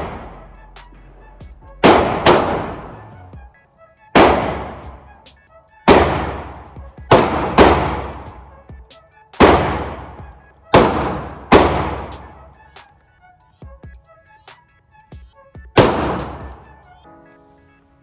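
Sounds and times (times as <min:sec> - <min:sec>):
pistol shots echoing: 0:01.8 - 0:03.0, 0:04.2 - 0:05.0, 0:05.9 - 0:08.4, 0:09.4 - 0:12.3, 0:15.8 - 0:16.4.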